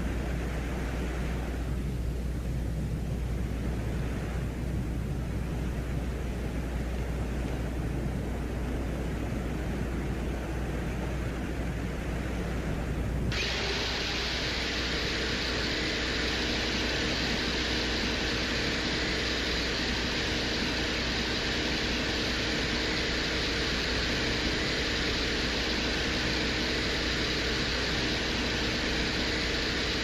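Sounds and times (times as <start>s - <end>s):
faint mechanical whirr: 0.0s - 30.0s
steady low hum: 0.0s - 30.0s.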